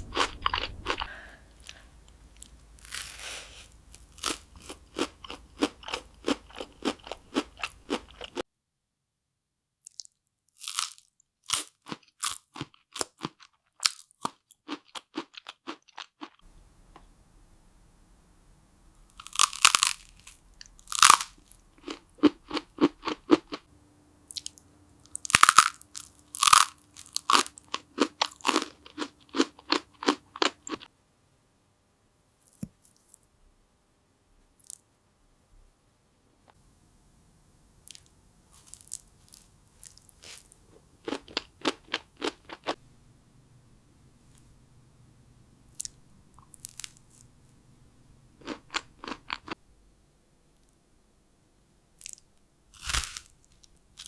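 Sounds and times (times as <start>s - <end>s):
crunchy bites and chewing: 0.0s - 8.4s, 9.8s - 16.4s, 19.1s - 23.6s, 24.3s - 30.9s, 37.9s - 42.8s, 45.7s - 47.3s, 48.4s - 49.6s, 52.0s - 54.0s.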